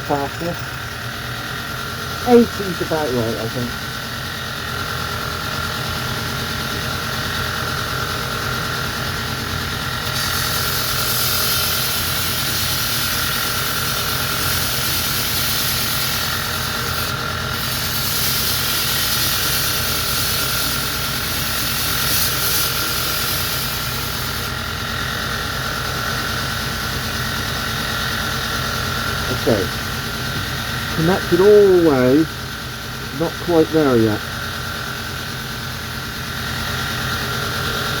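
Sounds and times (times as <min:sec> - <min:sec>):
belt grinder running: 0:00.0 - 0:38.0
blade grinding on abrasive belt: 0:09.8 - 0:32.1.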